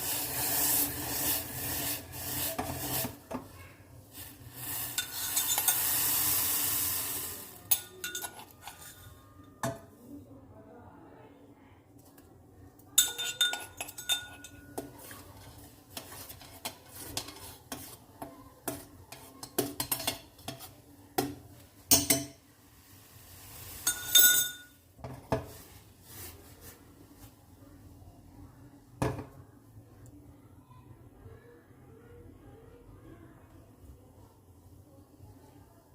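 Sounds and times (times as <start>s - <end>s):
utensil ringing out: 4.2s - 9.6s
utensils clinking against pots: 4.2s - 9.9s, 13.0s - 22.4s, 23.8s - 24.8s.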